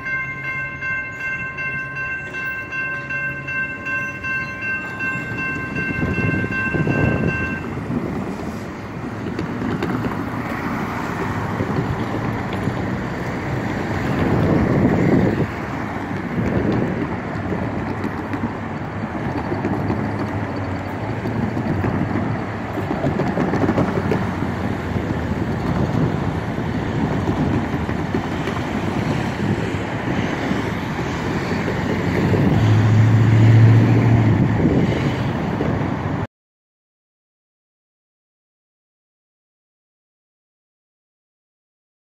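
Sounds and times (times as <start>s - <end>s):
freight train rumbling past: 0.0s - 36.3s
wind on microphone: 4.5s - 36.2s.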